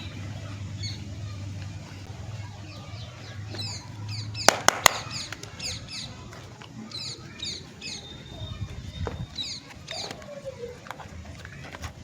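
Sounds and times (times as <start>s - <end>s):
sharp clicks: 4.5s - 5.6s
small bird chirping: 6.9s - 10.8s.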